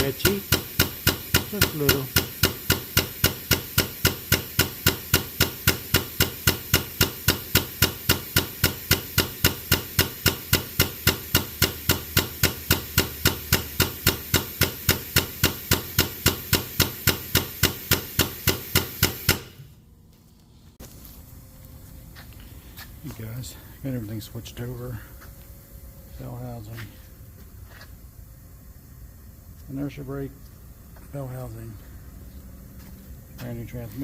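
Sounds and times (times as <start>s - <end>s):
rapid hammer blows: 0.0s - 19.7s.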